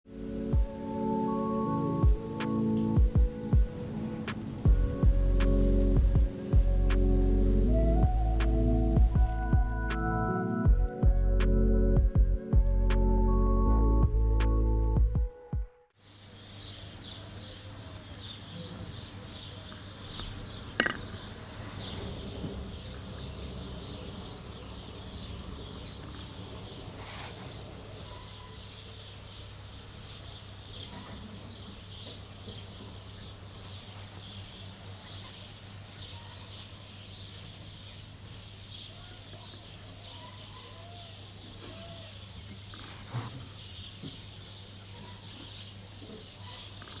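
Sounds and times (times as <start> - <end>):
birds chirping: 16.2 - 47.0.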